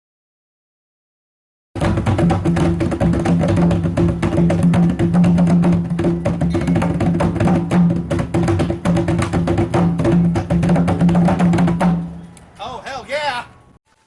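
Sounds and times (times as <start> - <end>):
djembe drumming: 1.8 - 12.1.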